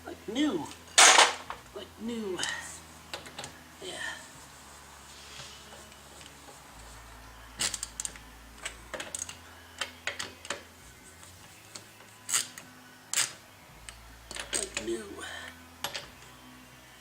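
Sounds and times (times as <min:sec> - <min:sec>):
tools clicking and knocking: 0:01.0 - 0:01.6, 0:07.6 - 0:10.7, 0:14.3 - 0:14.9, 0:15.8 - 0:16.2.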